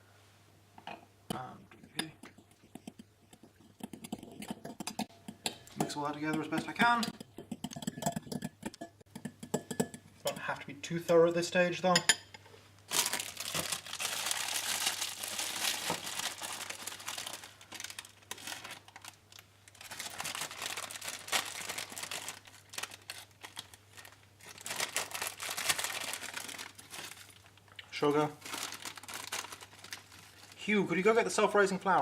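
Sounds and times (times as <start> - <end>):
spoon scraping in a bowl: 1.8 - 10.5.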